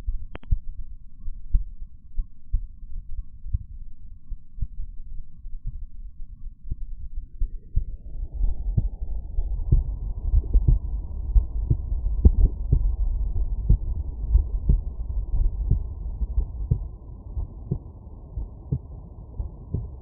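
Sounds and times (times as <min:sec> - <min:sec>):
heart beating through stethoscope: 0:00.0 - 0:20.0
low rumble: 0:00.0 - 0:20.0.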